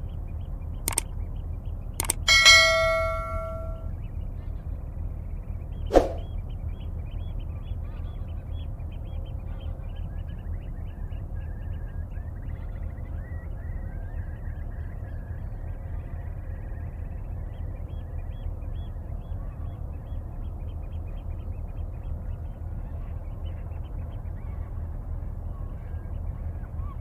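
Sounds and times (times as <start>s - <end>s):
metallic clang: 2.3s - 3.8s.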